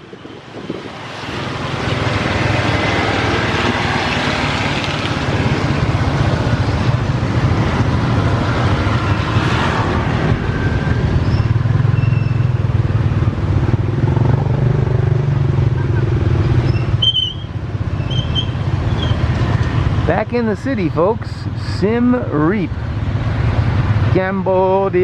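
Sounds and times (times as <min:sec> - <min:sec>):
wet road noise: 0:00.0 - 0:25.0.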